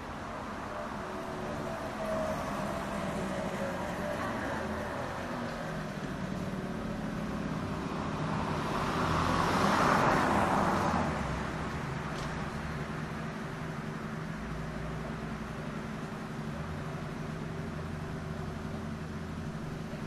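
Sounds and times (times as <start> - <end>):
city traffic hum: 0.0 - 20.0
vehicle passing close: 0.8 - 12.7.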